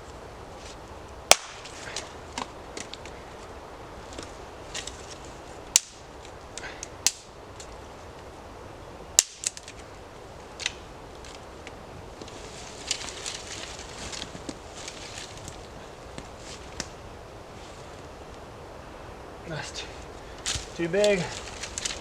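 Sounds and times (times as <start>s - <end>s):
dry sticks snapping: 0.6s - 8.3s, 9.1s - 17.0s, 20.0s - 22.0s.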